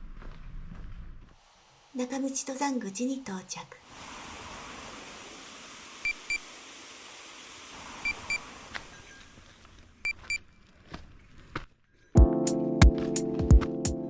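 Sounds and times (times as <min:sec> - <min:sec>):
steady hiss: 0:03.8 - 0:09.8
electronic double beep: 0:06.0 - 0:06.5, 0:08.0 - 0:09.2, 0:10.0 - 0:10.4
background music with a beat: 0:12.2 - 0:14.0.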